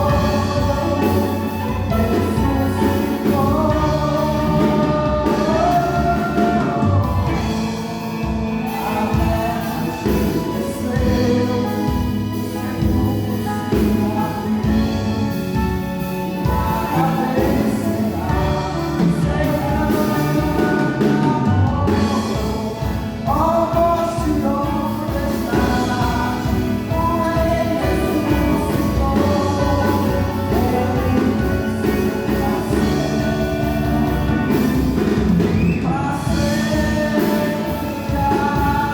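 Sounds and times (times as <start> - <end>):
live gospel band playing: 0.0 - 38.9
singing: 0.0 - 38.9.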